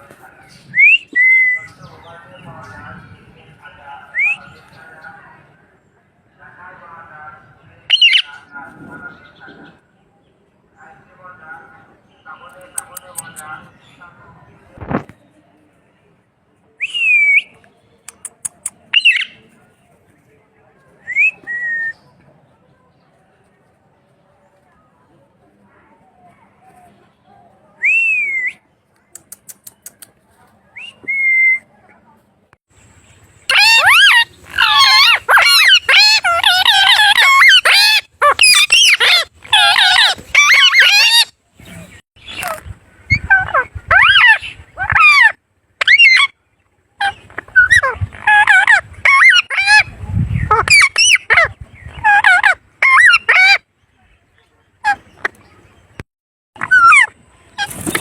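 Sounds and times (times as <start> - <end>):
parrot whistling: 33.5 - 41.3, 43.1 - 46.3.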